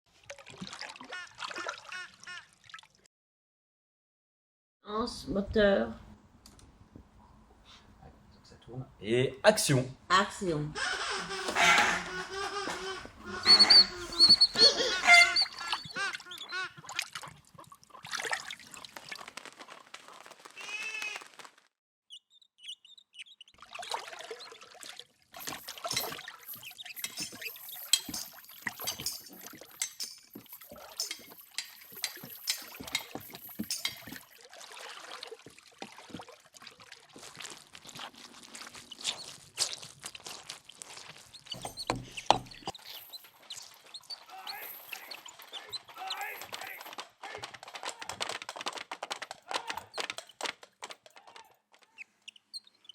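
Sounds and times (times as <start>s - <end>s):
water pouring and trickling: 0.1s - 3.0s, 13.1s - 20.6s, 23.5s - 47.2s
clicks knocks and clinks: 27.0s - 34.2s.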